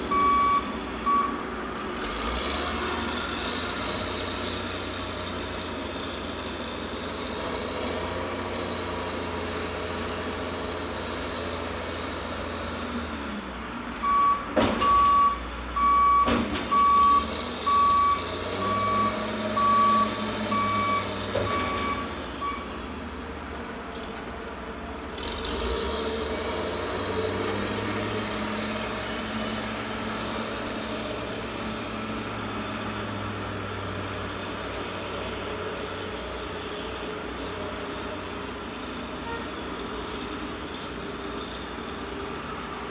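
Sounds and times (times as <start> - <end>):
reversing alarm beeping: 0.1 - 1.4, 14.0 - 22.7.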